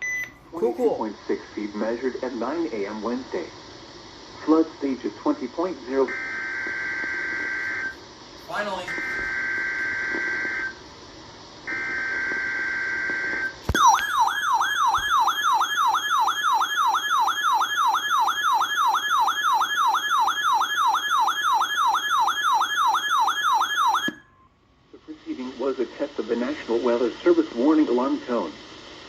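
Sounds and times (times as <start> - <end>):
warbling alert siren: 8.6 - 10.8, 11.7 - 24.3.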